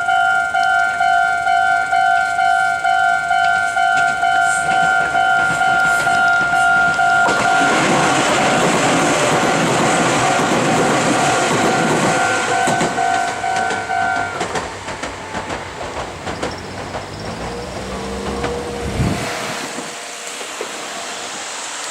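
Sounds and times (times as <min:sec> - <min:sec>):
level crossing bell ringing: 0:00.0 - 0:14.5
train wheels clacking: 0:00.0 - 0:21.9.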